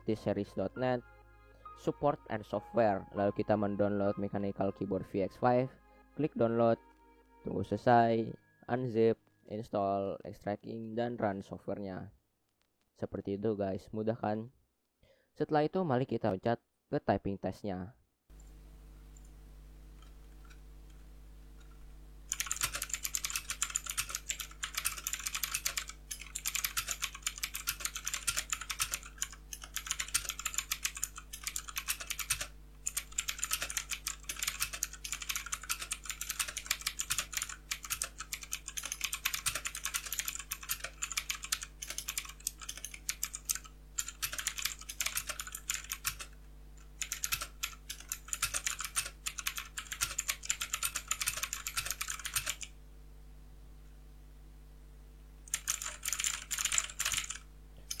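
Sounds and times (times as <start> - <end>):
fast mechanical keyboard typing: 22.3 - 52.7, 55.5 - 58.0.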